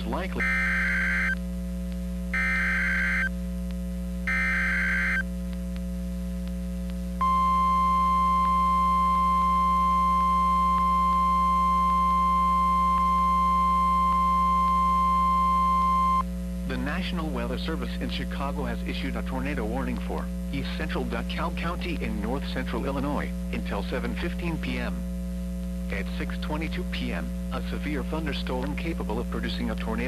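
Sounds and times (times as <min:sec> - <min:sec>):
digital data bursts: 0:00.0 - 0:01.4, 0:02.4 - 0:03.3, 0:04.3 - 0:05.2
steady warning alarm tone: 0:00.0 - 0:01.4, 0:02.4 - 0:03.3, 0:04.3 - 0:05.2, 0:07.2 - 0:16.2
mains hum: 0:00.0 - 0:30.0.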